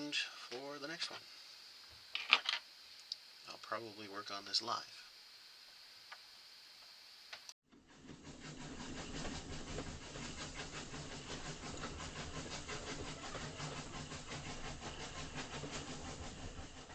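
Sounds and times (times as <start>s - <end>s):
train hiss and rumble: 0.0s - 7.5s, 8.3s - 16.9s
rapid even train clatter: 8.0s - 16.9s.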